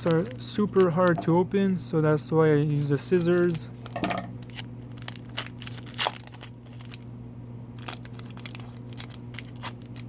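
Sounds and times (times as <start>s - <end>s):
wrapper crinkling: 0.0s - 1.2s, 2.7s - 7.1s, 7.8s - 10.0s.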